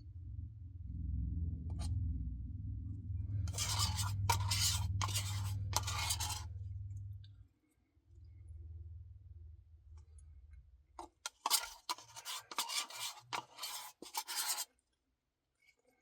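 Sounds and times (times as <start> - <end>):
low rumble: 0.0 - 11.0
scraping and rubbing: 3.3 - 7.0, 11.0 - 14.8.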